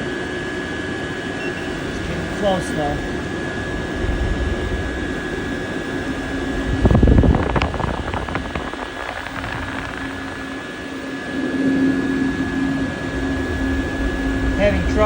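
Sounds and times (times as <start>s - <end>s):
heater blower and burner whine: 0.0s - 15.0s
short louder rumble: 1.8s - 10.6s, 13.0s - 15.0s.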